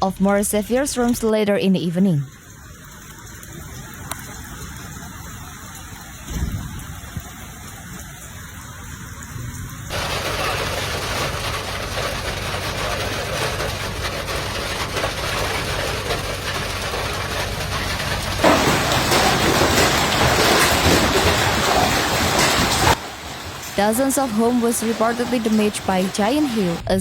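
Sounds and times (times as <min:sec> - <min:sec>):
hail and heavy rain clattering: 0:02.4 - 0:26.8
thud: 0:06.3 - 0:06.8.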